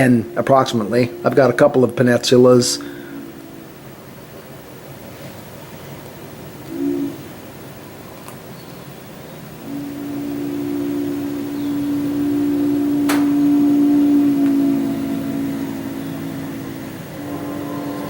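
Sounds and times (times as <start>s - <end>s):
train horn chord: 0.0s - 4.2s, 6.6s - 7.4s, 9.5s - 18.0s.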